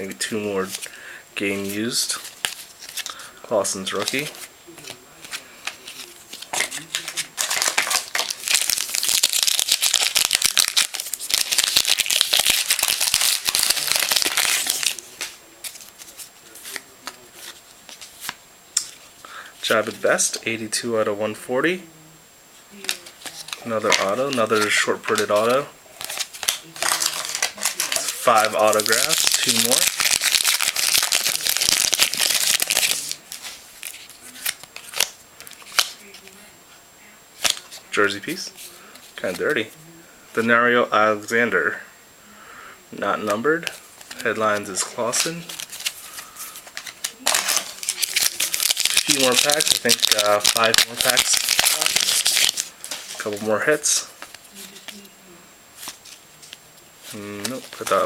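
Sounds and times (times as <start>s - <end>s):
wrapper tearing and crinkling: 5.9s - 16.1s, 23.0s - 36.0s, 45.1s - 53.5s.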